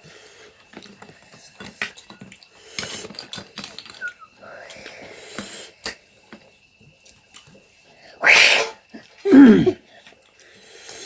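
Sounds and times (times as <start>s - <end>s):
eating utensils clicking: 0.7s - 6.4s
person breathy burst: 8.2s - 9.8s.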